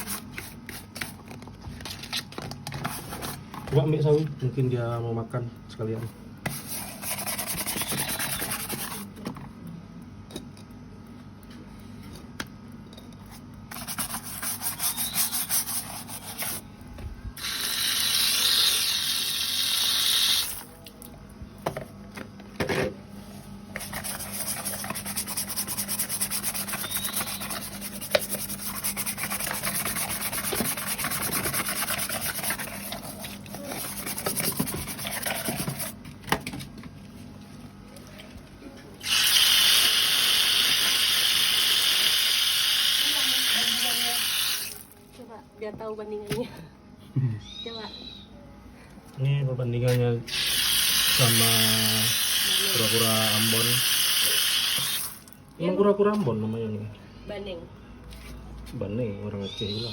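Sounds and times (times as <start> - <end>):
scrubbing tortoise shell: 6.5 - 9.2, 13.7 - 16.7, 23.7 - 36.0.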